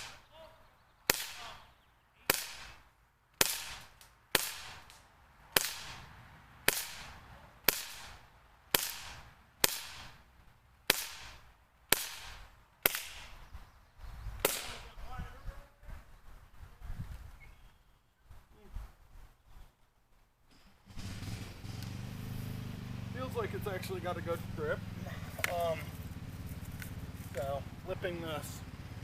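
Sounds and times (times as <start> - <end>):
bb pistol shots popping: 1.1 - 10.2, 10.9 - 13.4, 14.4 - 14.9.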